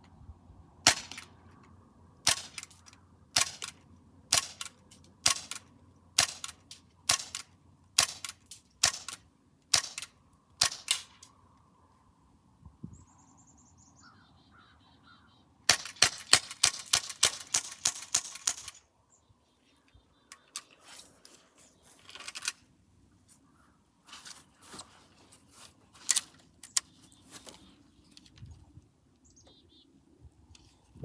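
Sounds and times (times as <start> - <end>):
pistol metallic clicks: 2.2 - 11.4, 15.7 - 18.8
faint birds chirping: 11.3 - 15.7, 17.7 - 30.9.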